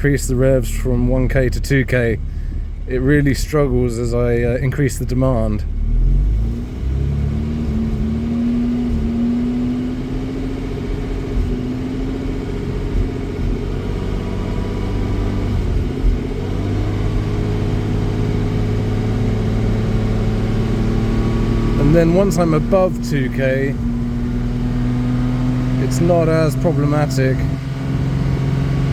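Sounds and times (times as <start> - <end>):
car engine misfiring under load: 0.0 - 28.9.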